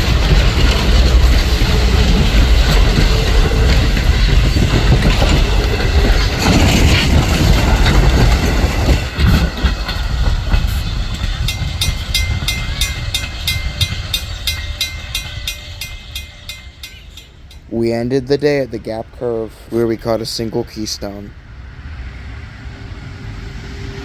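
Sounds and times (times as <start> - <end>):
train wheels rumbling on rails: 0.0 - 24.0
crossing bell dinging: 9.7 - 21.3.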